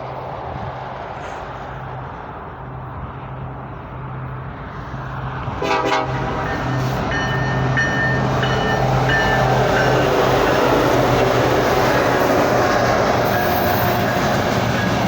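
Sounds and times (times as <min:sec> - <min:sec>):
diesel locomotive engine drone: 0:00.0 - 0:15.0
train horn blast: 0:05.6 - 0:07.0.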